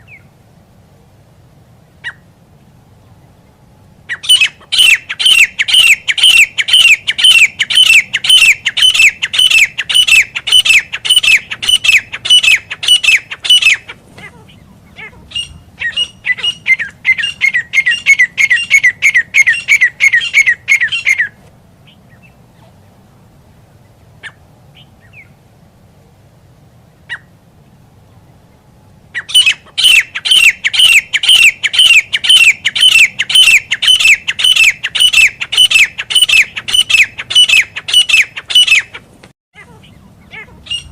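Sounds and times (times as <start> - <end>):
bird calling harsh notes: 2.0 - 2.3, 4.0 - 22.8, 27.0 - 27.4, 29.1 - 40.9.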